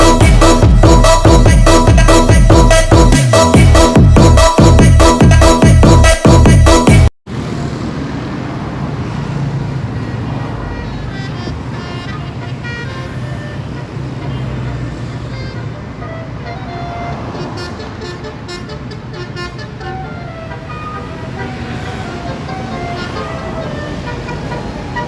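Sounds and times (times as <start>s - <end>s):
bus horn playing a tune: 0.0s - 7.0s, 10.6s - 25.0s
road traffic: 0.0s - 25.0s
bus engine hum: 7.3s - 25.0s.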